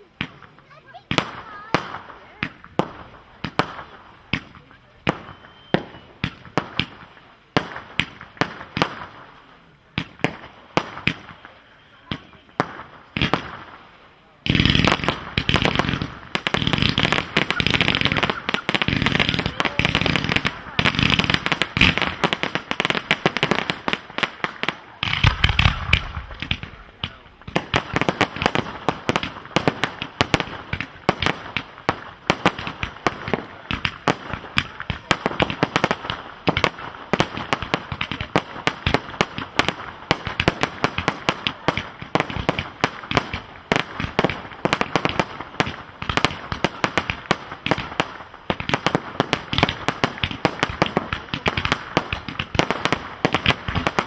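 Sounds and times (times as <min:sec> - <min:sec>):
fireworks popping and crackling: 0:00.0 - 0:54.0
deep firework boom: 0:25.1 - 0:29.7.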